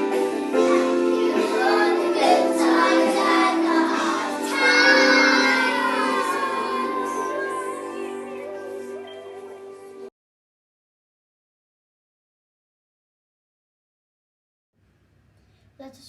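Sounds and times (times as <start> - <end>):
children singing: 0.0 - 10.1.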